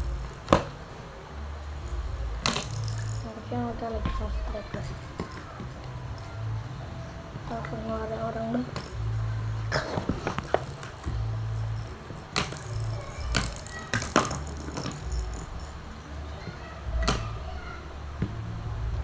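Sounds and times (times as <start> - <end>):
background music with low bass: 0.0 - 19.0
sharp clicks and rattles: 9.8 - 15.9.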